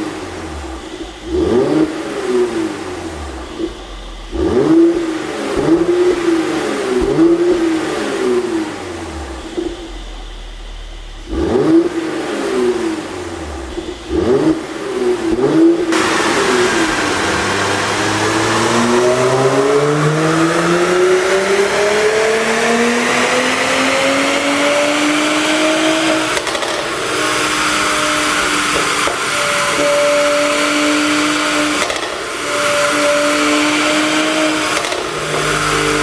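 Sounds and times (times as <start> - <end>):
car engine revving: 0.0 - 36.0
engine accelerating: 0.0 - 36.0
rushing hiss: 15.9 - 18.8.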